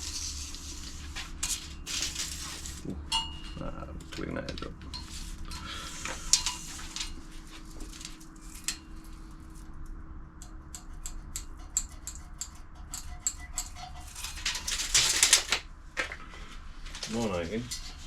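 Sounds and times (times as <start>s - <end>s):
metal scraping stroke: 4.9s - 9.7s.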